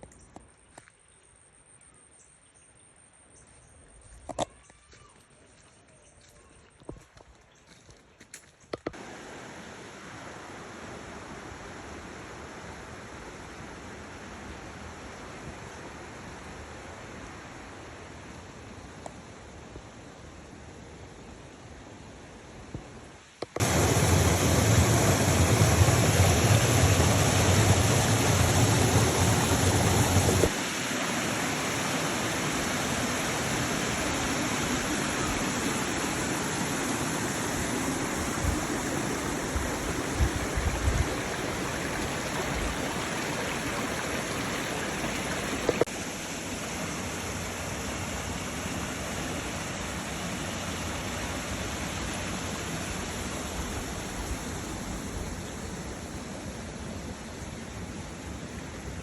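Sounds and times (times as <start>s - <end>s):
running water rushing: 8.9s - 18.4s, 23.2s - 59.0s.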